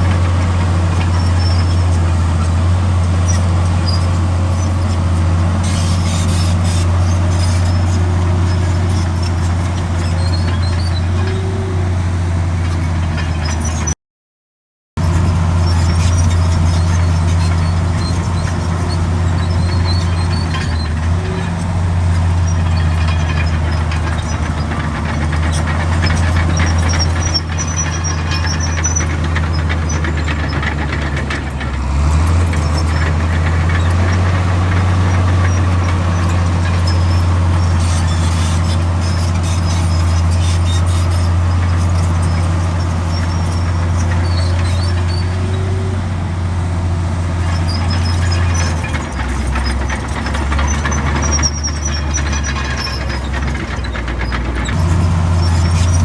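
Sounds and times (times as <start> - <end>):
bulldozer diesel engine: 0.0 - 14.0, 15.0 - 56.0
machine squeals and clanks: 0.0 - 14.0, 15.0 - 46.2, 47.3 - 56.0.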